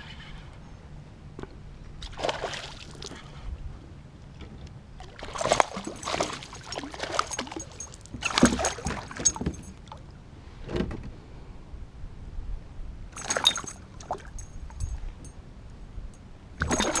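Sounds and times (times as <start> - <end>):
water splashing: 2.0 - 3.3, 5.0 - 10.0, 13.2 - 14.9, 16.6 - 17.0.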